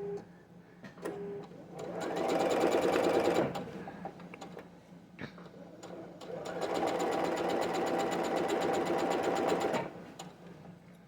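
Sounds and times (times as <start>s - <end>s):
sewing machine stitching: 1.7s - 3.7s, 5.8s - 10.3s.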